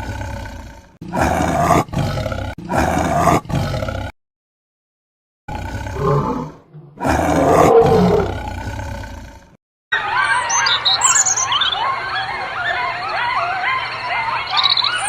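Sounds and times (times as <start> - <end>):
large animal roaring: 0.0 - 4.2, 5.5 - 9.6.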